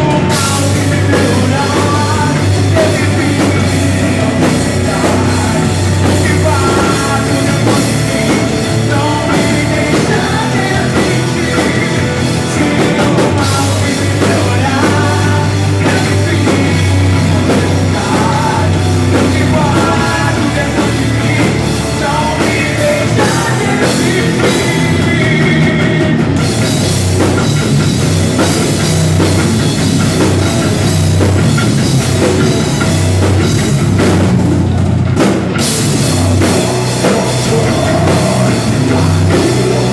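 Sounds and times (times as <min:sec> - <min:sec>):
person singing: 0:00.0 - 0:26.6, 0:36.2 - 0:39.9
rock band playing: 0:00.0 - 0:39.9.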